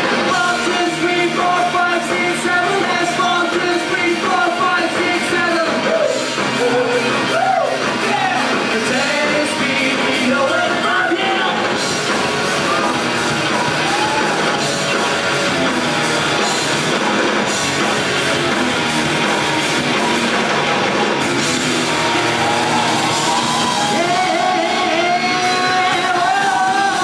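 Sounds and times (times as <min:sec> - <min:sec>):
person singing: 0:00.0 - 0:11.8, 0:22.8 - 0:27.0
live rock band playing: 0:00.0 - 0:27.0.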